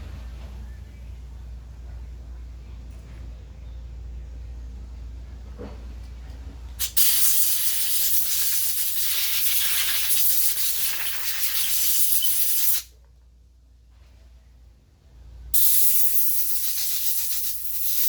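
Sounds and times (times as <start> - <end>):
pressurised spray hissing: 6.8 - 12.9, 15.6 - 18.0.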